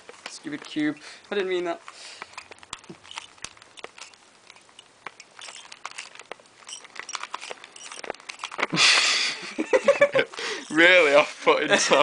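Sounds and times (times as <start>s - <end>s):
puzzle cubes clicking: 1.9s - 8.8s.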